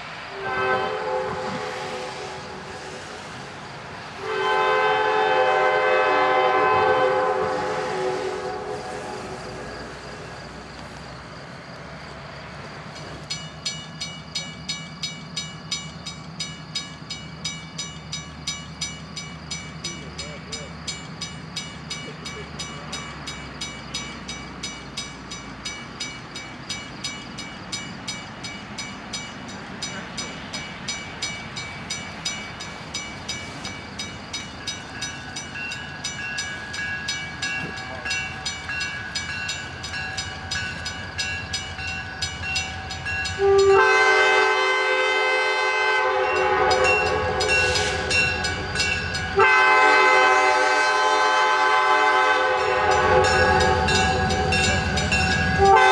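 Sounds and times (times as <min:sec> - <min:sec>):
train rumble: 0:00.0 - 0:55.9
train air horn blasts: 0:00.3 - 0:03.3, 0:04.1 - 0:09.7, 0:43.4 - 0:48.6, 0:49.4 - 0:54.9, 0:55.6 - 0:55.9
crossing warning bell ringing: 0:12.9 - 0:55.9.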